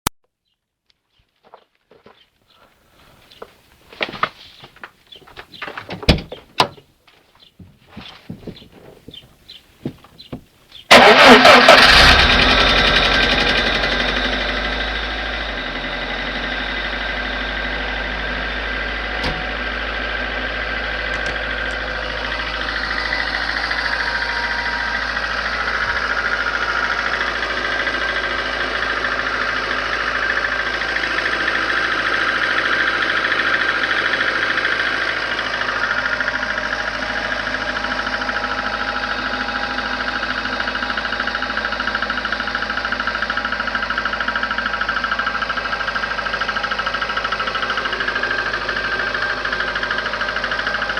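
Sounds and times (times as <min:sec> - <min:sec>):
car engine running: 0:09.8 - 0:50.9
rapid engine knocking: 0:11.0 - 0:16.5, 0:20.2 - 0:50.9.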